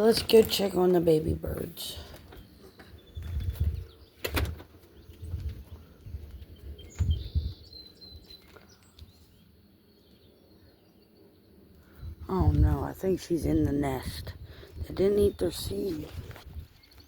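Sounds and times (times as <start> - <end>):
bird chirps: 6.3 - 12.2.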